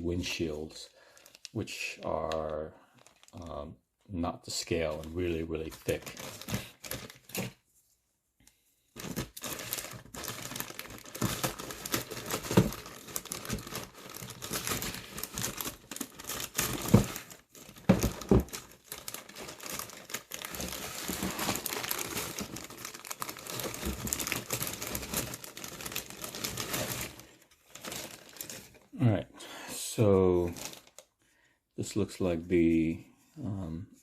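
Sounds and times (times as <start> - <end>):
plastic bags crinkling: 0.1 - 3.7, 4.6 - 7.6, 9.0 - 28.9, 30.4 - 31.1.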